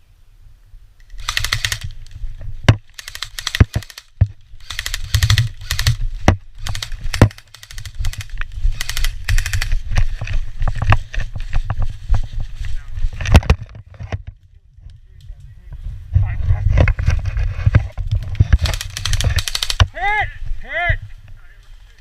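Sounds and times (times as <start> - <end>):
airsoft guns firing rapid bursts: 1.2 - 1.9, 2.9 - 6.0, 6.6 - 9.8, 18.6 - 19.9.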